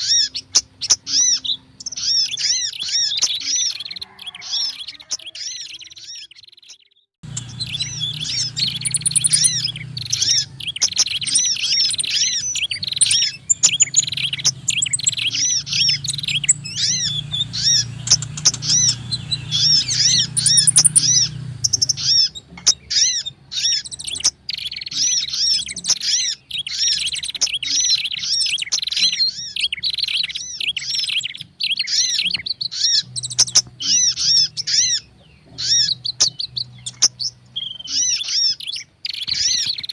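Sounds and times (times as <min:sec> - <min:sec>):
songbirds chirping: 0:00.0 - 0:39.9
low hum: 0:07.2 - 0:22.5.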